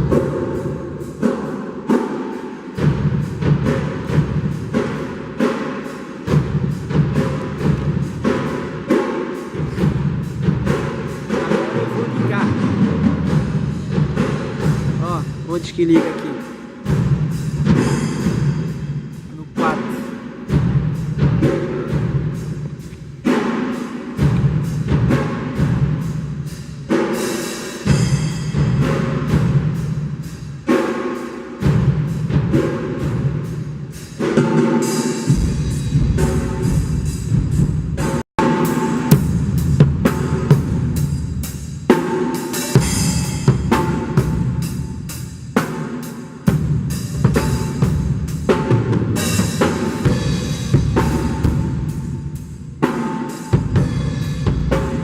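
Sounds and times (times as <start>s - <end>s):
acoustic drum kit groove: 0.0s - 55.0s
cymbal crashes: 0.0s - 55.0s.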